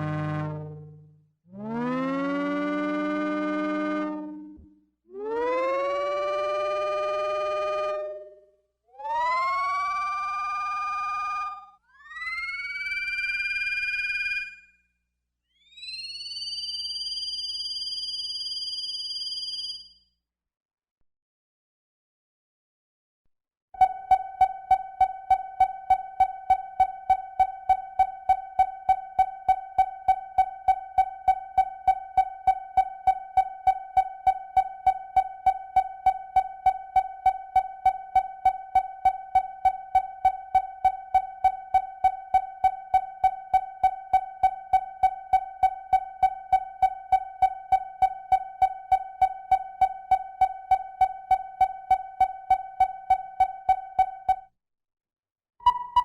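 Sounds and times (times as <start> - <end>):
pulsing electronic tone: 0.0 - 4.5, 23.8 - 54.5, 55.6 - 56.0.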